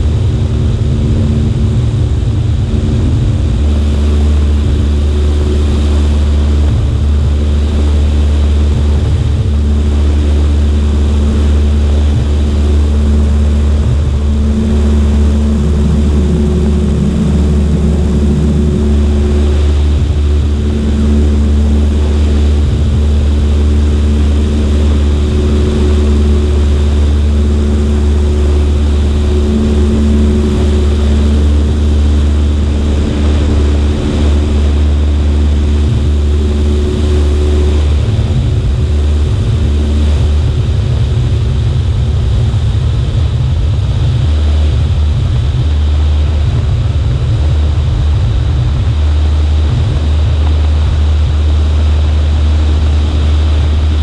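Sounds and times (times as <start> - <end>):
airplane engine and propeller droning: 0.0 - 54.0
air rushing: 12.0 - 40.5.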